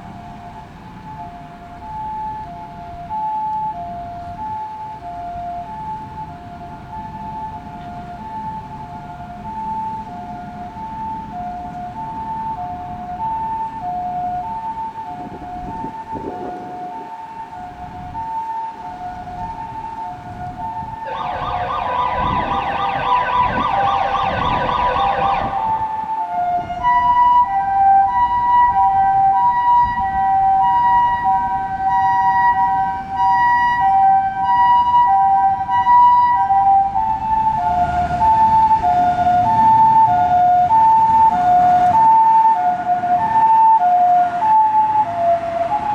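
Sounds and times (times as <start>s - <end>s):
ambulance two-tone siren: 0.0s - 45.9s
low road noise: 0.0s - 45.9s
siren fast yelp: 20.8s - 45.9s.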